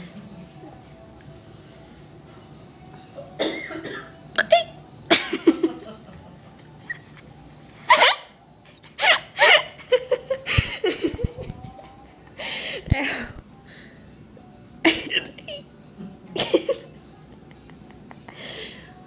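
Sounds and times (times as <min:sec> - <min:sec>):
person hiccuping: 0:03.4 - 0:04.8, 0:14.9 - 0:15.6.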